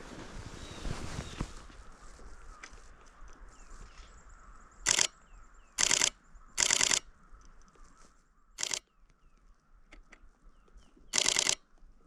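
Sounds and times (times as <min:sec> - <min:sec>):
camera shutter burst clicks: 0:04.9 - 0:05.1, 0:05.8 - 0:07.1, 0:08.6 - 0:08.8, 0:11.1 - 0:11.6.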